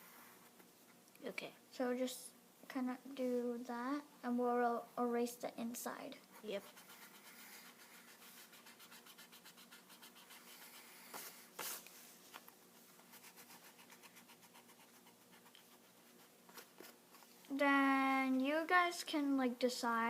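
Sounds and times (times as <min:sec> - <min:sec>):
pencil strokes on paper: 0:06.3 - 0:12.2, 0:12.8 - 0:17.4.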